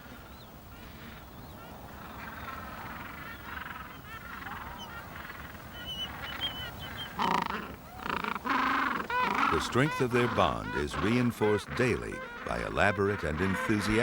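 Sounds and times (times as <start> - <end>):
loud close penguin call: 2.4 - 14.0
penguins honking: 2.4 - 14.0.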